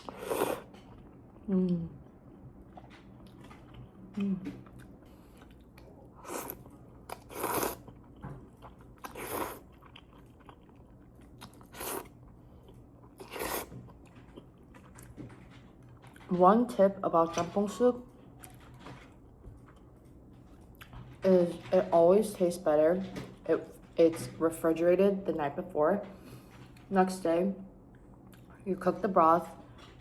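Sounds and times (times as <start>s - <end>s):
person chewing noodle soup: 0.0s - 15.2s
person humming: 1.5s - 2.0s, 4.2s - 4.5s.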